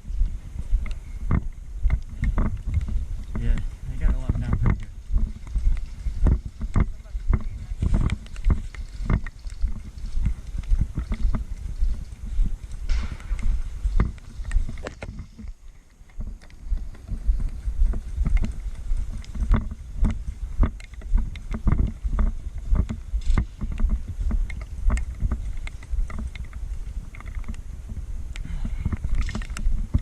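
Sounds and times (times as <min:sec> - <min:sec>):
low rumbling wind: 0:00.0 - 0:30.0
irregular clicks and knocks: 0:00.8 - 0:30.0
camera handling noise: 0:12.9 - 0:17.1, 0:28.9 - 0:30.0.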